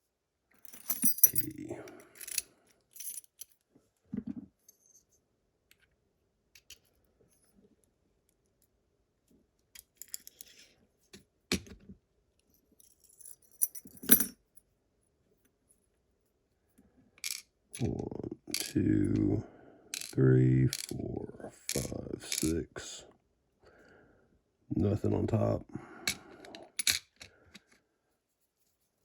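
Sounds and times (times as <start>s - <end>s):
small metal parts clicking: 0.7s - 3.5s, 17.2s - 17.5s, 18.5s - 18.8s, 19.9s - 21.0s, 26.1s - 27.3s.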